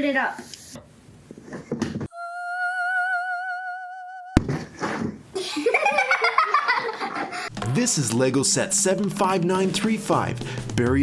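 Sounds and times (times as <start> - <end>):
voices with falling pitch: 2.1 - 4.4.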